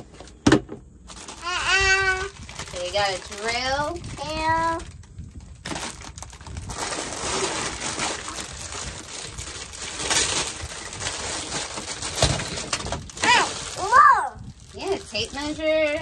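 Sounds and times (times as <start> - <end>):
plastic toy tools rummaged: 5.6 - 13.8.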